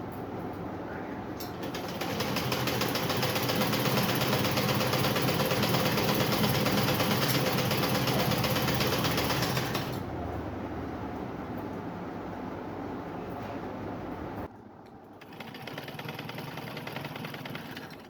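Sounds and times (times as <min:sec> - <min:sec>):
sewing machine stitching: 0:01.6 - 0:10.1, 0:15.2 - 0:18.0.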